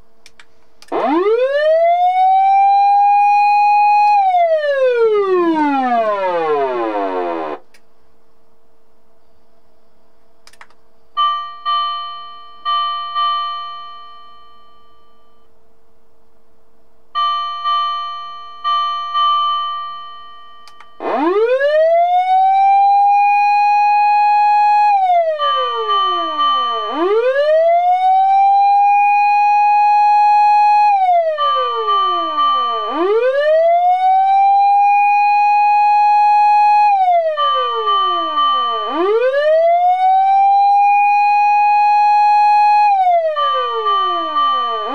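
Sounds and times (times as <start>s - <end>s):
siren wail: 0.8s - 7.6s, 20.9s - 44.9s
electronic siren bell tone: 0.9s - 7.6s, 11.2s - 15.5s, 17.2s - 44.9s.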